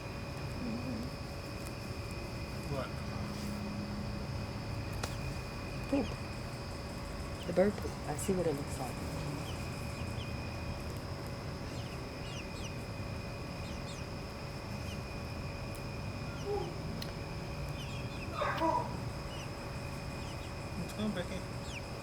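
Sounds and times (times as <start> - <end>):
chicks peeping and clucking: 8.2 - 18.3, 19.0 - 21.9.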